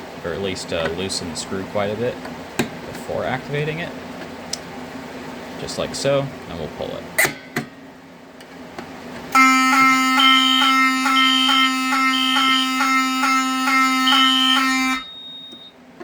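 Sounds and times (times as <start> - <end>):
fire alarm horn buzzing: 9.3 - 15.8.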